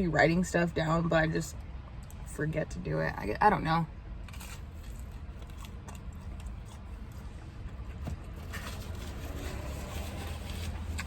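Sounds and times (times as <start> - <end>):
person chewing: 4.2 - 7.3.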